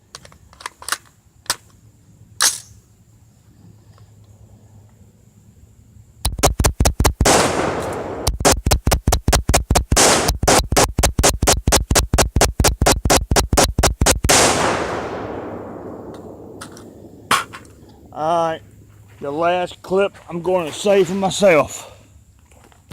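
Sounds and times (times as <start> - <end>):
gunshot echo: 6.3 - 8.7, 9.9 - 12.0, 12.8 - 18.2
rapid rifle shots: 6.3 - 17.8.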